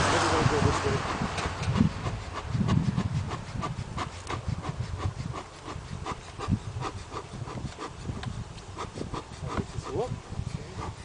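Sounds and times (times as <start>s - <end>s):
low rumble: 0.0s - 6.0s
honeybees buzzing: 0.0s - 11.0s.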